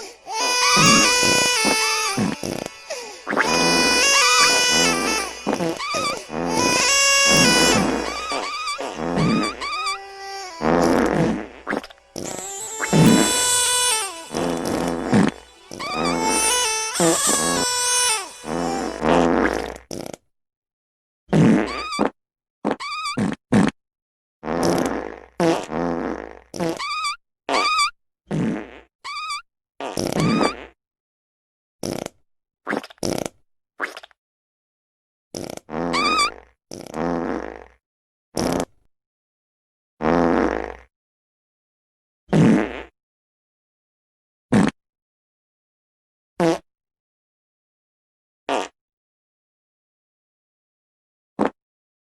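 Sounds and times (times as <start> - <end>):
fart sounds: 0.8 - 20.2, 21.3 - 23.8, 24.4 - 28.9, 29.8 - 30.8, 31.8 - 34.1, 35.4 - 37.8, 38.4 - 38.8, 40.0 - 40.9, 42.3 - 42.9, 44.5 - 44.8, 46.4 - 46.7, 48.5 - 48.8.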